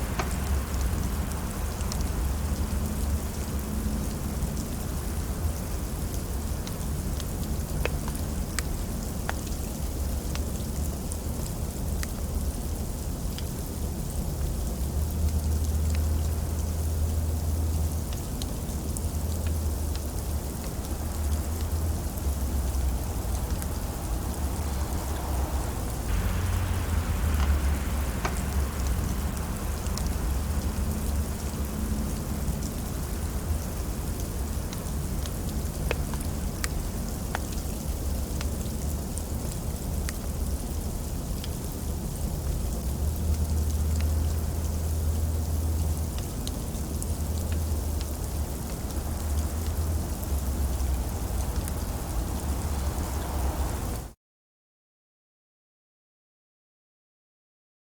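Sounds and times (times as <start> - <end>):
rain drop ticks: 0.0 - 54.1
heavy rain pouring: 0.0 - 54.2
deep low rumble: 23.0 - 33.2.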